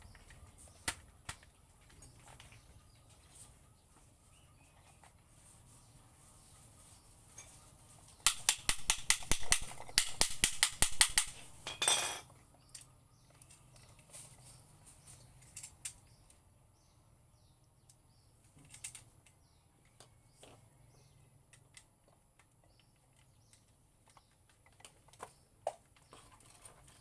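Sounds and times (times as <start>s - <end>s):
sharp mechanical clicks: 8.3s - 11.6s.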